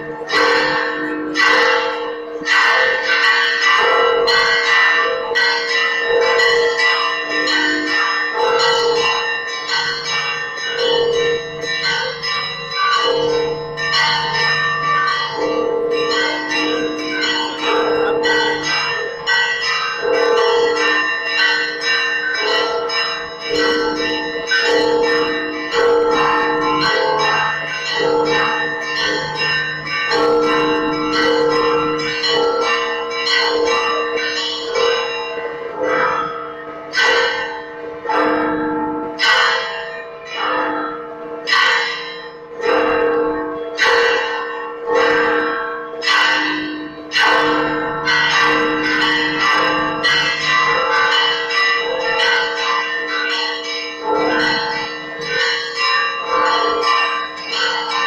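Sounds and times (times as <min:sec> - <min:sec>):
church bells pealing: 0:00.0 - 0:58.0
deep bell: 0:00.0 - 0:58.0.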